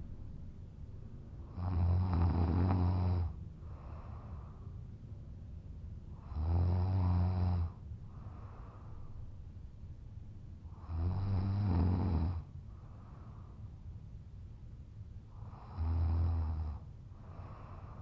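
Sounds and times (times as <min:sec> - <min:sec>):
man snoring: 0:01.6 - 0:03.4, 0:06.2 - 0:07.8, 0:10.8 - 0:12.5, 0:15.4 - 0:16.8
soft breath: 0:03.6 - 0:05.0, 0:07.6 - 0:09.5, 0:12.5 - 0:14.0, 0:16.8 - 0:18.0.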